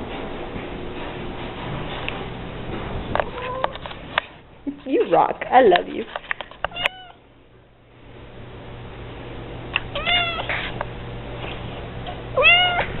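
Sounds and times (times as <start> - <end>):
cat meowing: 3.3 - 3.8, 6.7 - 7.2, 9.9 - 10.6, 12.4 - 13.0.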